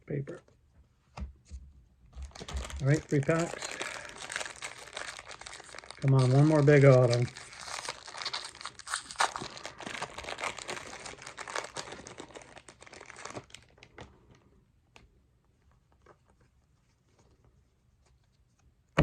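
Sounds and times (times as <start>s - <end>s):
wrapper tearing and crinkling: 2.2s - 14.1s.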